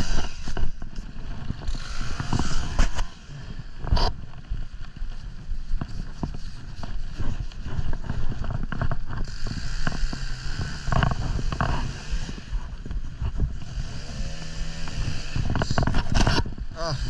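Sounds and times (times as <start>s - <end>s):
chainsaw engine running: 0.0s - 4.4s, 7.9s - 17.0s.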